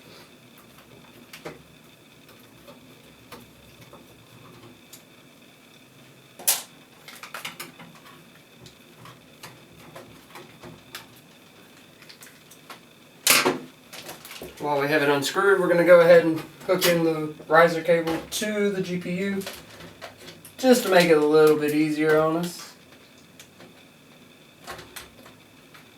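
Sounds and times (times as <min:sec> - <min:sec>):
clicks of handling computer parts: 0:12.0 - 0:14.6.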